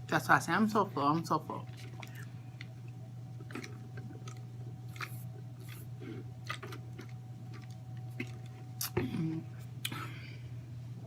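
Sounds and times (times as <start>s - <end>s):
close chewing: 3.4s - 9.0s.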